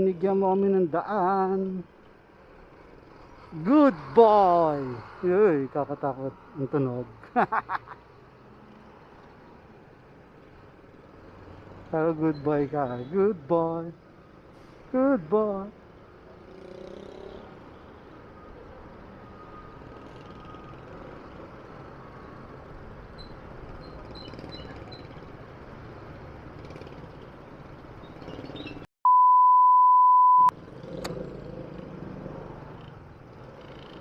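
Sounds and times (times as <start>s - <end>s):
road and traffic noise: 0.0s - 28.9s, 30.1s - 34.0s
censor bleep: 29.0s - 30.5s.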